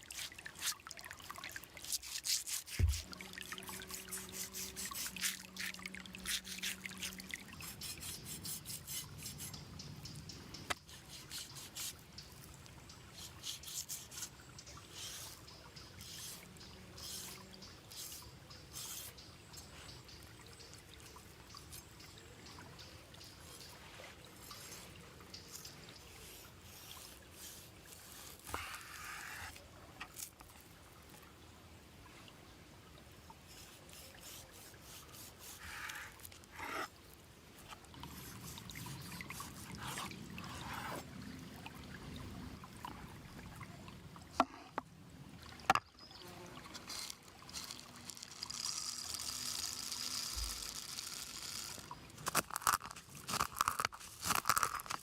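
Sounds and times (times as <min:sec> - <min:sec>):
rubbing and scraping: 0:01.8 - 0:09.6, 0:23.5 - 0:30.4, 0:33.5 - 0:37.0, 0:37.6 - 0:41.0, 0:46.6 - 0:55.0
sharp crackles and clicks: 0:46.8 - 0:55.0.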